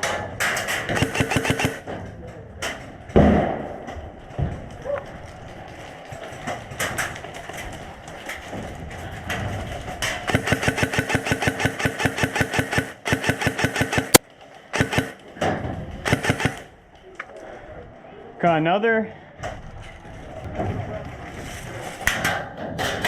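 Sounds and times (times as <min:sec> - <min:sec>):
airsoft gun automatic fire: 0:00.9 - 0:01.8, 0:10.3 - 0:14.2, 0:14.8 - 0:15.2, 0:16.0 - 0:16.7
sharp crack: 0:10.1 - 0:14.2.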